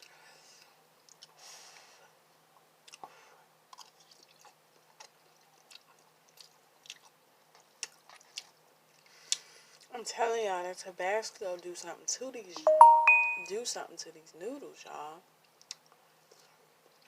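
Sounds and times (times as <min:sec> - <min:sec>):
chewing noodles: 0:01.0 - 0:01.4, 0:02.8 - 0:03.1, 0:03.7 - 0:09.9.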